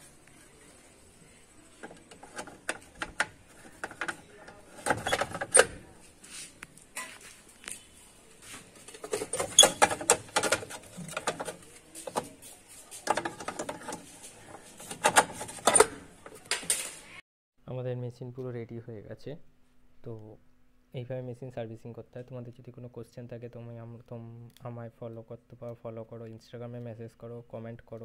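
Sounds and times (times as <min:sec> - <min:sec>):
machine parts clicking and scraping: 0:01.7 - 0:05.9, 0:08.7 - 0:17.1.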